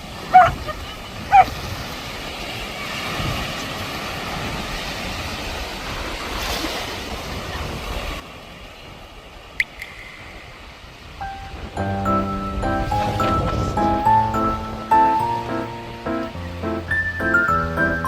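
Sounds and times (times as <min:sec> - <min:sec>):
surf washing: 0:00.0 - 0:17.5
sharp click: 0:09.6 - 0:10.6.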